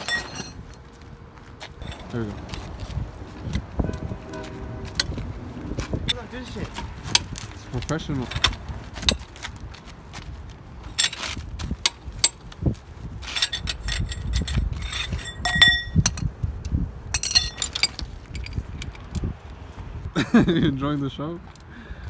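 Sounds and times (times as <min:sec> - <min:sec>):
metal tools clinking on wheel: 0:00.0 - 0:00.8, 0:01.8 - 0:02.8, 0:06.0 - 0:09.4, 0:10.8 - 0:12.6, 0:13.2 - 0:16.3, 0:17.1 - 0:19.3.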